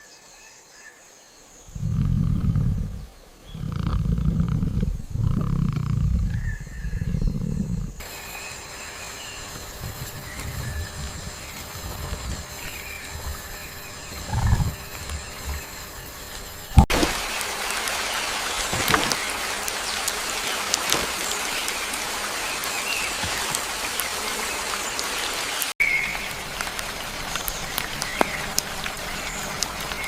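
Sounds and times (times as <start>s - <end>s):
high insect-like whine: 0.7s - 30.0s
deep animal growls: 1.7s - 8.1s, 9.1s - 16.9s.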